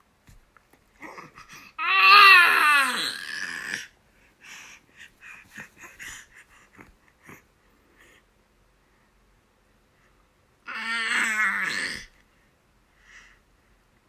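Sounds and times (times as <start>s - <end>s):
baby snorting and grunting: 10.7s - 12.2s.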